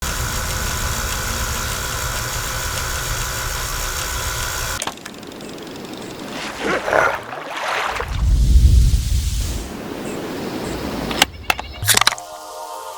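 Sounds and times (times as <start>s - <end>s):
tape rewinder whirring: 0.0s - 6.2s
low rumble: 8.0s - 9.7s.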